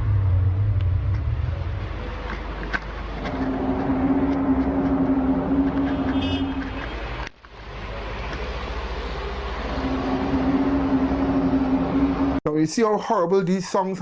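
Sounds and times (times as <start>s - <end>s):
low drone in the sky: 0.0s - 7.7s, 8.4s - 12.4s
traffic noise: 0.0s - 12.6s
steady tone: 3.2s - 12.4s.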